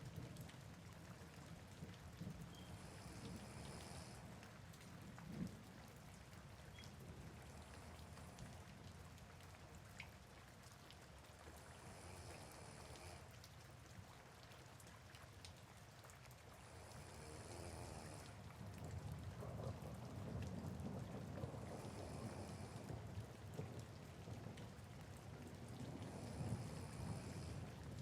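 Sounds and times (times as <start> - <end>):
soft steady rain: 0.0 - 28.0
person snoring faintly: 2.8 - 4.3, 11.8 - 13.3, 16.7 - 18.4, 21.7 - 23.0, 26.0 - 27.7.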